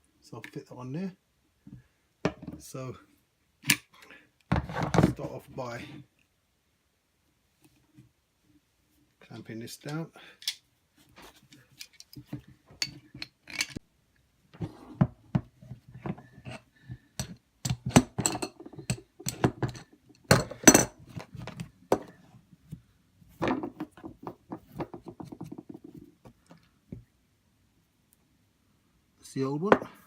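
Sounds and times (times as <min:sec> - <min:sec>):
metal tools clinking on metal: 0:12.8 - 0:13.8, 0:17.2 - 0:21.0.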